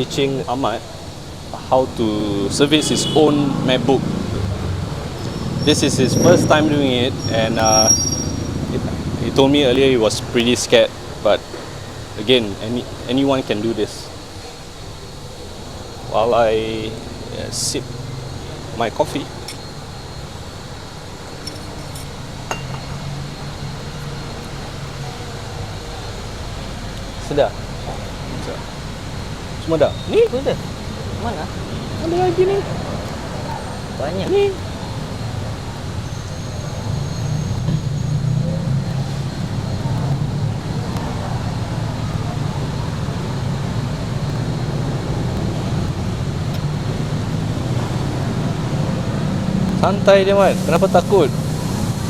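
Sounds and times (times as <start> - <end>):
constant low hum: 0.0 - 52.0
light clink: 21.4 - 23.6.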